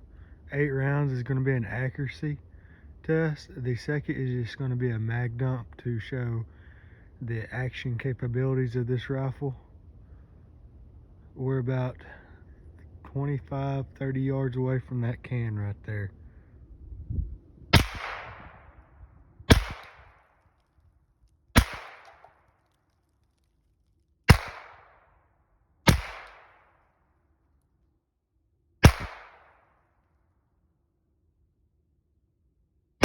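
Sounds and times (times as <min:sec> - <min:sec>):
rifle shots with echo: 0:17.7 - 0:18.9, 0:19.5 - 0:20.4, 0:21.5 - 0:22.5, 0:24.3 - 0:25.2, 0:25.8 - 0:26.9, 0:28.8 - 0:29.9.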